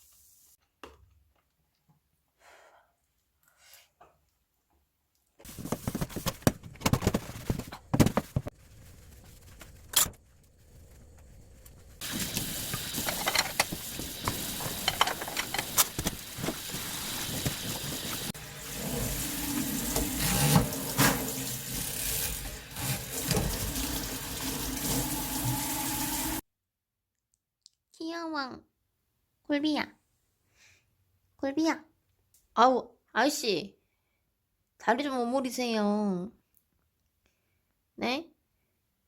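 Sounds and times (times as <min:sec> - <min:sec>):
water running from a tap: 0:12.0 - 0:26.4.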